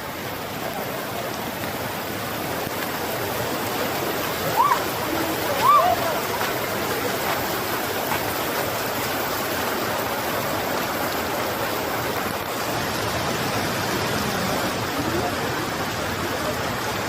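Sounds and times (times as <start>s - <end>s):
waterfall and river rushing: 0.0s - 17.0s.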